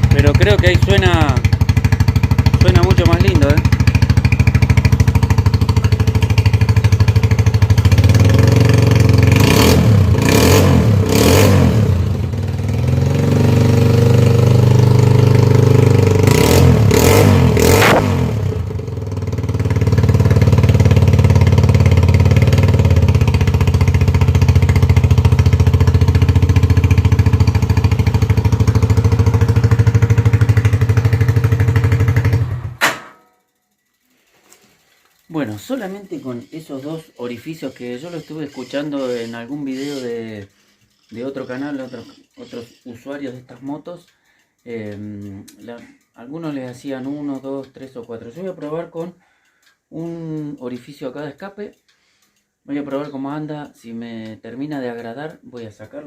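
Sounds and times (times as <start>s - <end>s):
motorcycle engine idling and revving: 0.0s - 33.4s, 34.4s - 43.4s.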